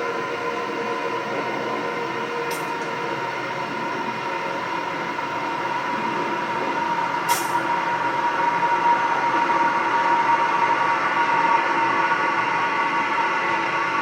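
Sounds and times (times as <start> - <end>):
sharp hiss: 7.3 - 7.6.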